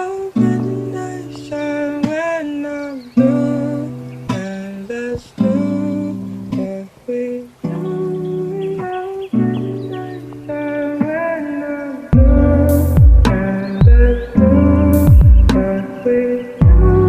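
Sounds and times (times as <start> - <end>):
plucked guitar chords: 0.0 - 2.4, 3.2 - 17.0
person singing softly: 0.0 - 17.0.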